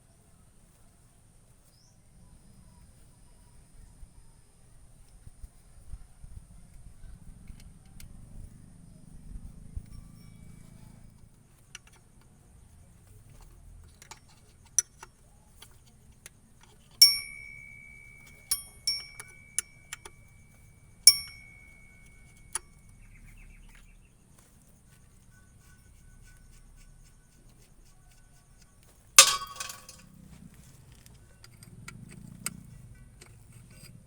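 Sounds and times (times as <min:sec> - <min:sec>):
metal objects clinking: 0:17.0 - 0:22.6, 0:29.2 - 0:30.1
ringing metal strikes: 0:17.0 - 0:22.7, 0:29.2 - 0:30.0.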